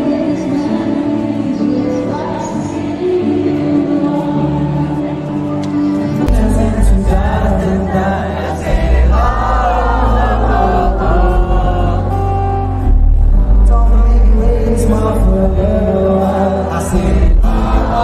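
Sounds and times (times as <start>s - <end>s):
crowd singing together: 0.0s - 18.0s
heavy bass: 6.2s - 18.0s.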